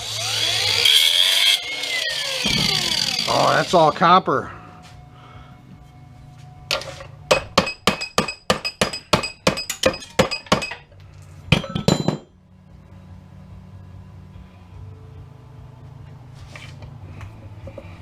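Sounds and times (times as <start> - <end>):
hammer striking metal: 6.7 - 10.9, 11.5 - 12.3.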